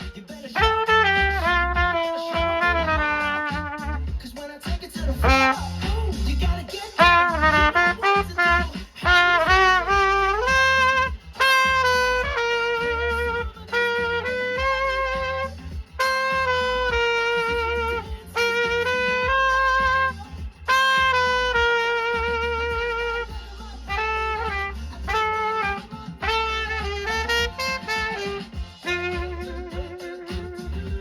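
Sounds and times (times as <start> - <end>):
horn melody: 0.0 - 4.2, 5.2 - 31.0
strong bass line: 0.6 - 4.4, 5.0 - 31.0.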